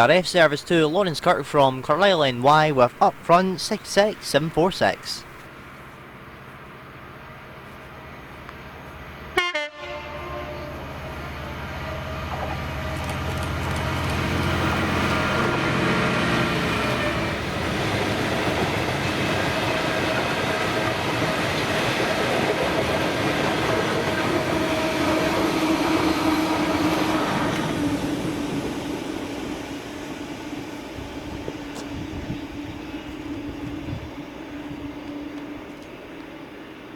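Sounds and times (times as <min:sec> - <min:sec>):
diesel locomotive engine throbbing: 0:00.0 - 0:36.3
wagons rumbling and clattering: 0:12.3 - 0:15.0.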